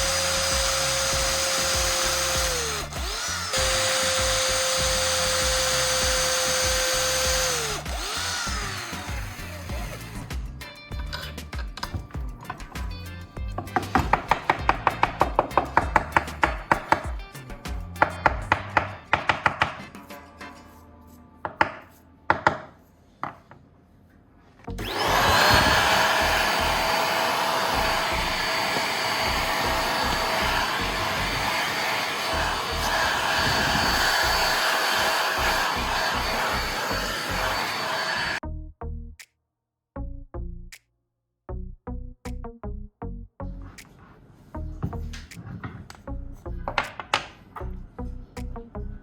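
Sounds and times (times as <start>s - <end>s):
power tool motor whine: 0.0s - 10.4s, 24.7s - 38.4s
saw cutting wood: 0.0s - 10.6s, 13.6s - 19.8s, 24.7s - 38.4s
knocks: 11.6s - 20.0s.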